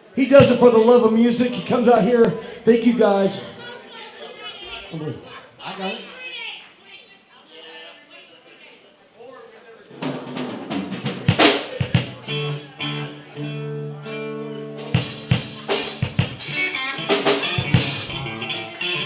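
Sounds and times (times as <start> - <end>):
drum hits: 0.4 - 0.6, 9.9 - 12.2, 14.9 - 18.6
electric guitar chords: 10.7 - 19.0.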